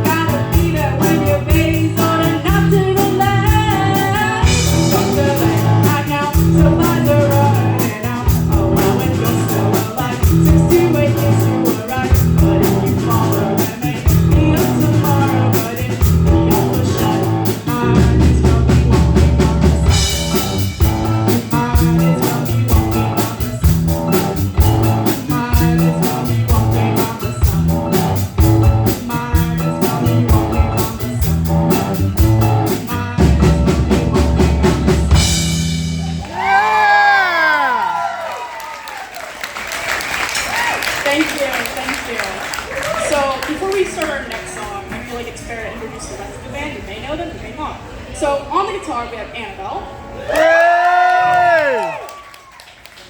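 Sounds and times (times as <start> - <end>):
live rock band playing: 0.0 - 37.8.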